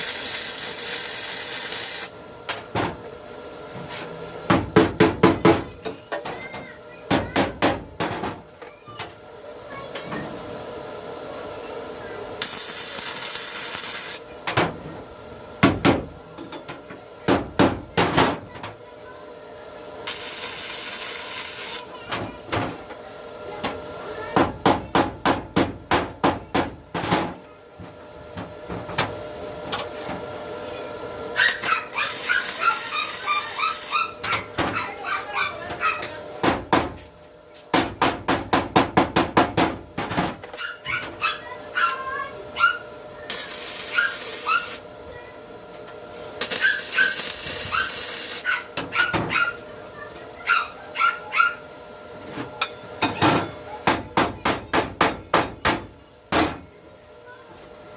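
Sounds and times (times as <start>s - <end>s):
dog barking: 31.4s - 36.1s, 40.6s - 42.9s, 43.9s - 44.7s, 46.6s - 49.6s, 50.4s - 51.6s.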